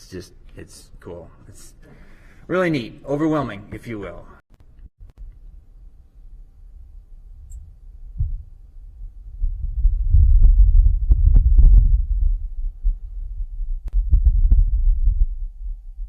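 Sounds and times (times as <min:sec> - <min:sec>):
wind rumble buffeting microphone: 0:08.1 - 0:16.0.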